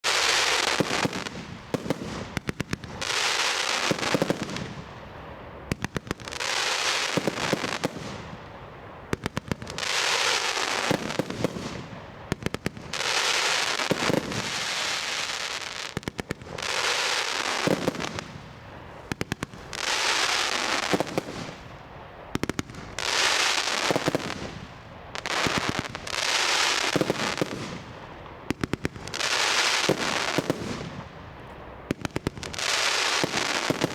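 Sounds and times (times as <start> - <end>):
fireworks bursting and crackling: 0.0 - 33.9
firework launch cracks: 9.2 - 21.7, 25.2 - 31.1, 31.9 - 33.9.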